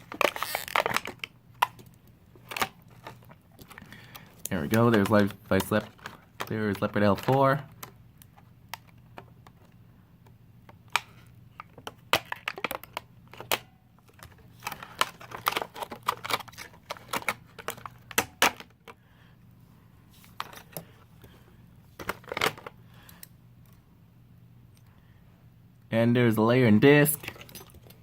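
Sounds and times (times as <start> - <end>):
plastic parts clicking and tapping: 0.0 - 19.0, 22.0 - 23.8.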